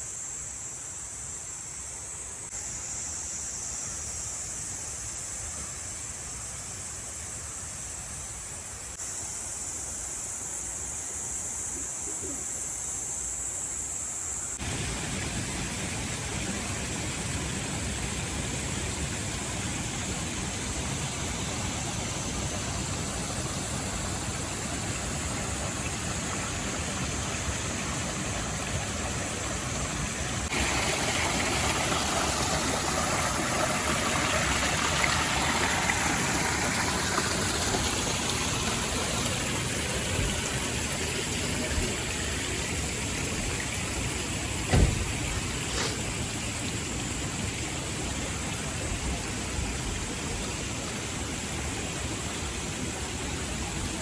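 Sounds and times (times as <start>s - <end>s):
stream water flowing: 14.6s - 54.0s
thump: 44.6s - 45.4s.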